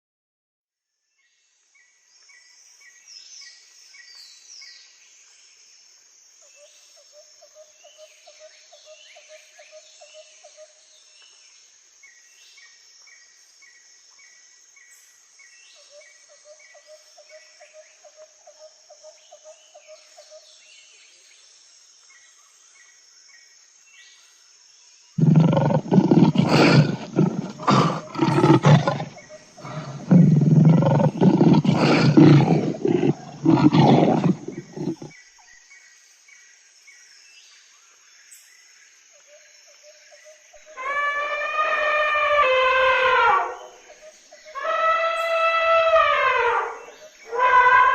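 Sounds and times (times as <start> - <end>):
insects hissing: 18.4 - 47.9
large animal roaring: 25.2 - 35.1
faint chirping: 25.2 - 35.3.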